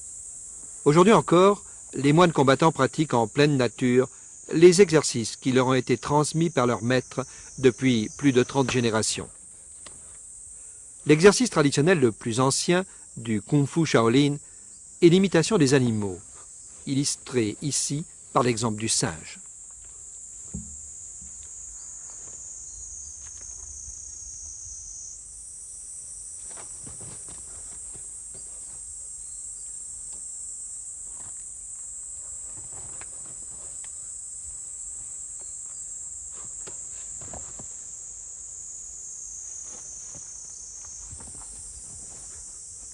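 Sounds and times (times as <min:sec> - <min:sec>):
insects chorus: 0:00.0 - 0:42.9
faint scuffs and thumps: 0:19.6 - 0:22.5, 0:26.4 - 0:28.9, 0:32.3 - 0:33.8, 0:35.0 - 0:37.8, 0:39.5 - 0:42.9.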